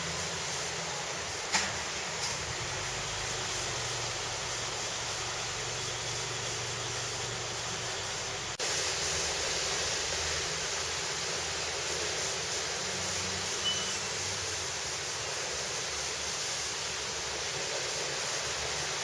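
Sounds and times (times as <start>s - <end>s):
rushing outdoor background hiss: 0.0s - 19.0s.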